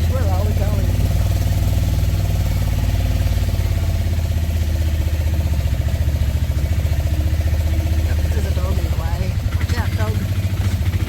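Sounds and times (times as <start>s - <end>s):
auto-rickshaw engine running: 0.0s - 11.0s.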